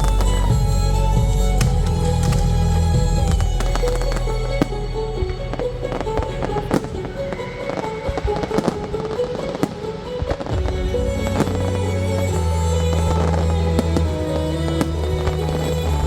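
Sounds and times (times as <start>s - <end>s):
music with sustained notes: 0.0s - 16.0s
fireworks shells bursting: 3.4s - 6.0s.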